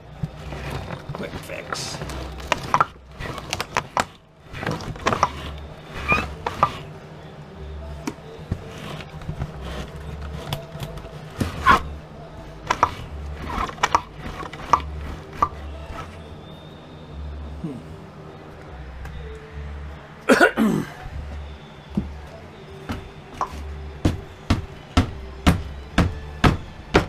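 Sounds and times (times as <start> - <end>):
hand tools knocking and scraping wood: 0.1 - 6.9, 8.0 - 11.9, 12.6 - 16.2, 21.3 - 27.0.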